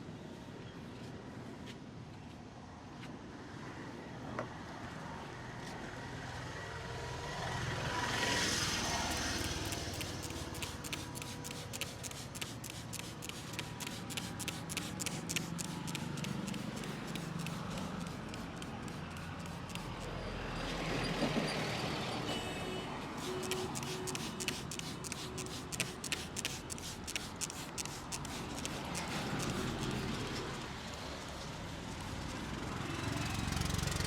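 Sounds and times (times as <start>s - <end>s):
street traffic passing: 4.8s - 34.0s.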